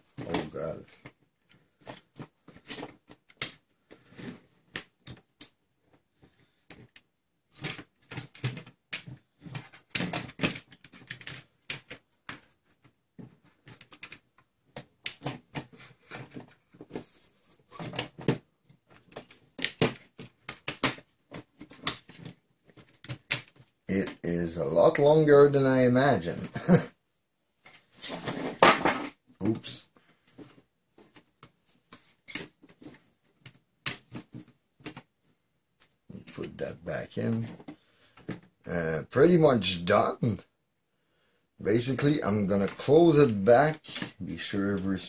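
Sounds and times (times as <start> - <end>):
plastic and metal parts clicking: 6.7 - 17.2, 17.8 - 24.2.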